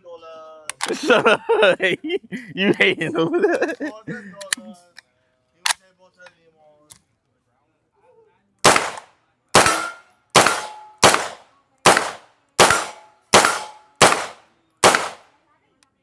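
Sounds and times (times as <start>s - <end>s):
gunshots: 8.7s - 15.3s.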